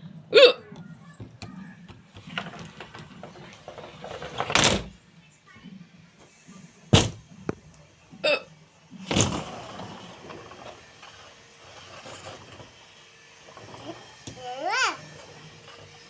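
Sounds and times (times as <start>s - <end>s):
person hiccuping: 0.3s - 0.7s, 8.2s - 8.5s.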